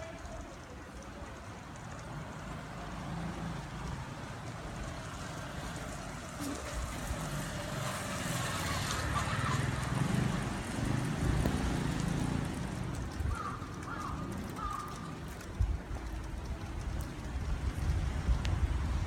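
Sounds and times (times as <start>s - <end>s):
wind buffeting microphone: 9.6s - 19.0s.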